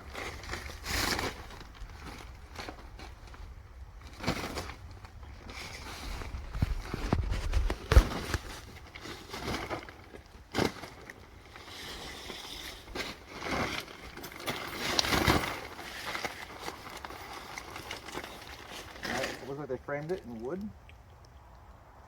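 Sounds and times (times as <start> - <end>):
plastic wrap crackling and tearing: 0.0 - 20.1.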